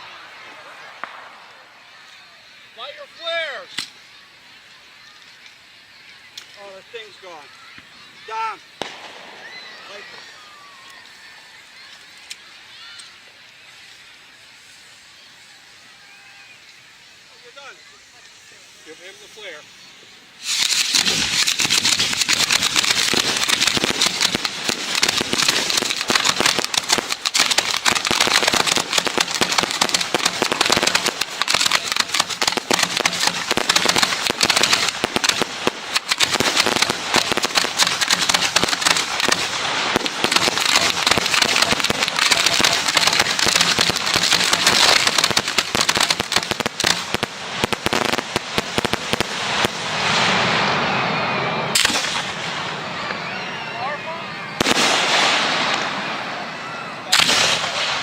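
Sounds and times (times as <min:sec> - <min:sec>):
hand flare sputtering and hissing: 0:13.8 - 0:49.8.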